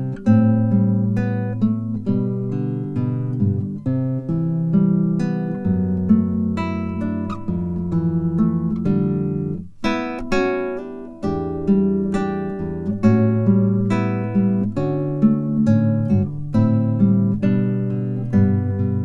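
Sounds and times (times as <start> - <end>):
acoustic guitar chords: 0.0 - 19.0.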